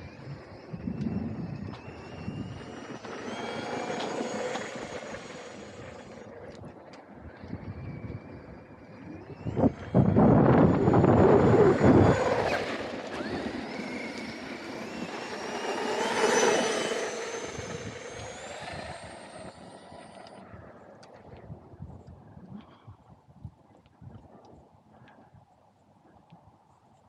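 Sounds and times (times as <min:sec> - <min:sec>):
rc truck motor whine: 0:00.0 - 0:21.3.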